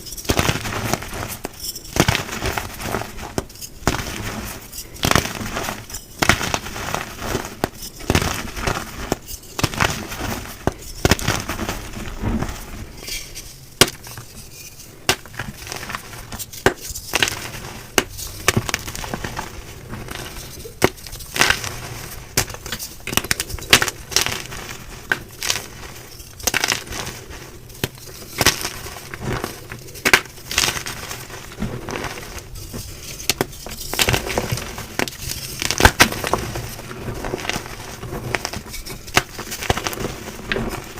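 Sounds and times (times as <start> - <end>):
chalk blocks crunching: 0.0 - 40.9.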